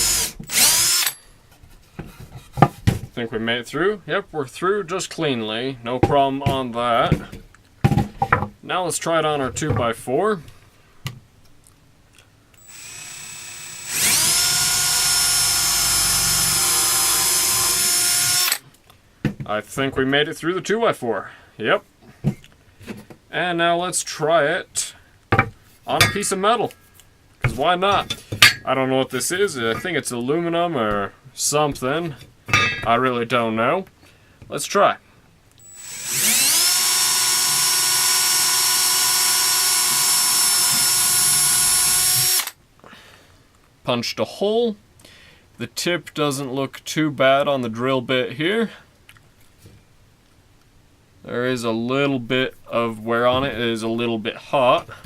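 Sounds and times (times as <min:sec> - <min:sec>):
power drill boring into wood: 0:00.0 - 0:01.2, 0:12.6 - 0:18.6, 0:35.6 - 0:42.6.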